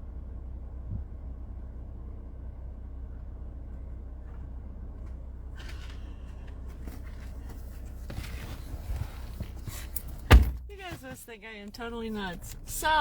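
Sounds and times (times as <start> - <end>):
vehicle idling: 0.0 - 13.0
rustling and handling noises: 5.6 - 12.7.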